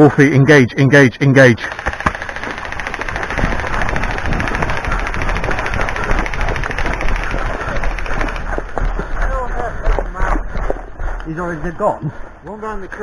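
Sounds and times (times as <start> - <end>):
airsoft gun full-auto firing: 1.6 - 8.6.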